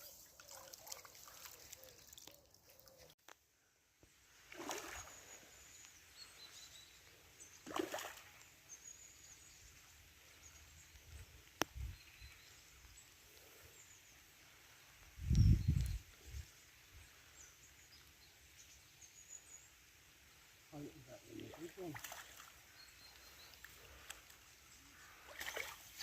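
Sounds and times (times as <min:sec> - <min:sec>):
faint bird chirps: 0:04.6 - 0:19.8, 0:20.7 - 0:26.0.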